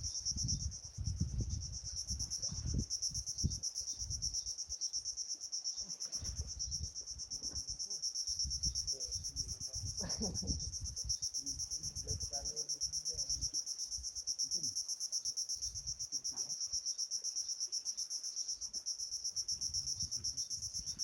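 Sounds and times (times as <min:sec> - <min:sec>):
wind rumbling on microphone: 0:00.0 - 0:04.5, 0:06.1 - 0:12.5, 0:19.5 - 0:21.0
insects trilling: 0:00.0 - 0:21.0.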